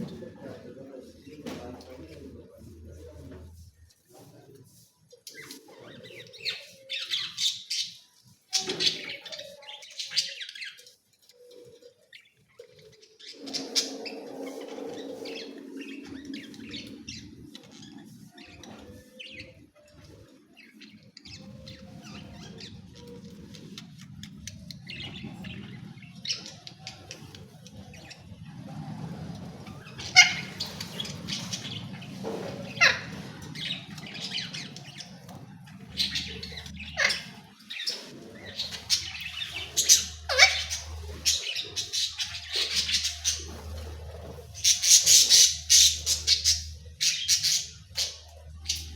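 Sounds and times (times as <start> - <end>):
parrot chirping and squawking: 12.8 - 18.6, 29.8 - 48.9.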